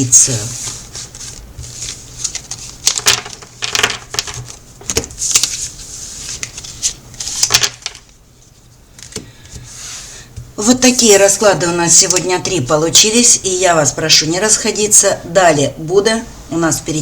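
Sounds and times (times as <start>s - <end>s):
cards being shuffled: 0.4s - 8.2s, 8.9s - 9.8s.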